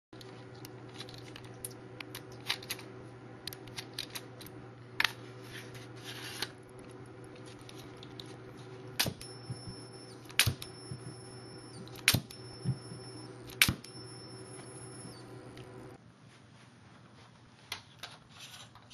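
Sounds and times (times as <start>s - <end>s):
high-pitched capacitor whine: 6.8s - 16.0s.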